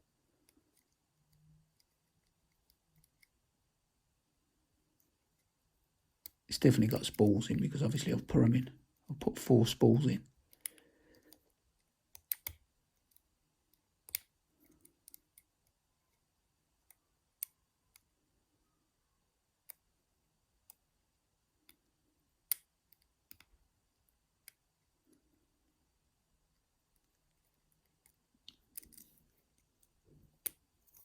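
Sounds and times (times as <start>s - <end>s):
lock pick clicking: 12.2s - 12.6s.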